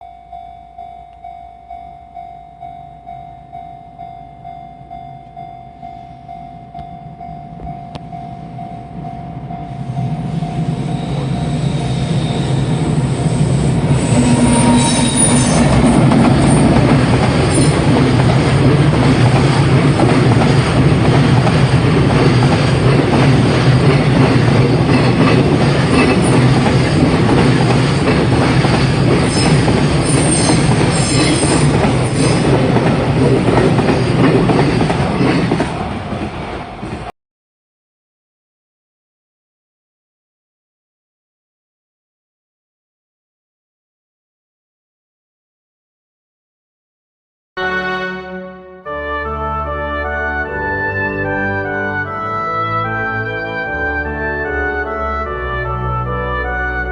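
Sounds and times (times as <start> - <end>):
train wheels rumbling on rail: 7.5 - 37.1.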